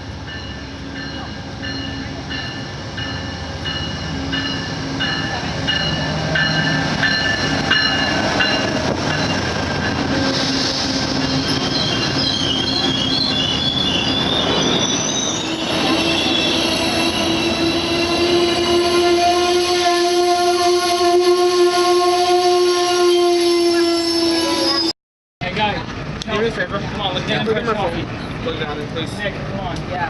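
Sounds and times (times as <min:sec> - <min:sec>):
train running over rails: 0:00.0 - 0:30.0
train wheels squealing: 0:00.3 - 0:18.9.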